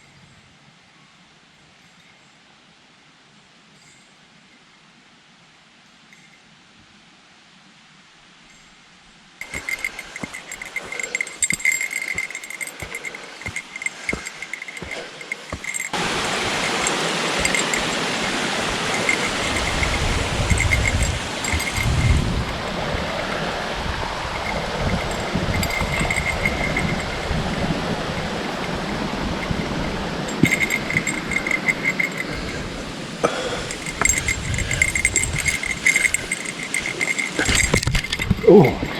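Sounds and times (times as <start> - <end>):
footsteps on trail: 9.4 - 38.9
insects chirping: 9.4 - 38.9
wind on microphone: 16.0 - 38.9.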